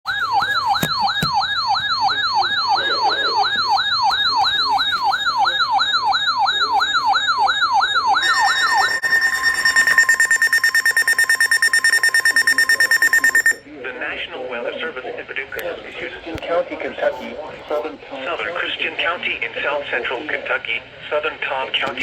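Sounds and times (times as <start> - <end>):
electronic siren yelping: 0.1 - 13.6
pulsing high electronic tone: 8.0 - 13.6.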